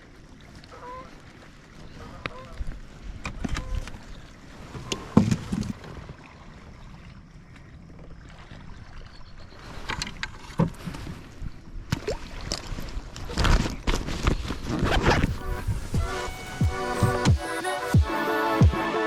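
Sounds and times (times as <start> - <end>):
water noise: 0.0 - 19.0
wind noise: 9.6 - 17.3.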